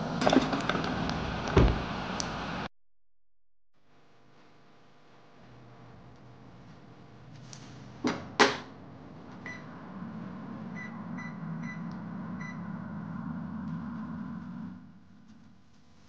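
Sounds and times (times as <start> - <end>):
microwave oven humming: 8.4 - 15.7.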